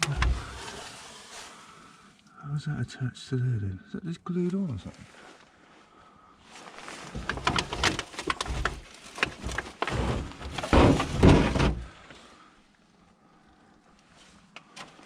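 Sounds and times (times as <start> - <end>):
object handling knocks and scraping: 0.0 - 1.1, 7.0 - 12.1.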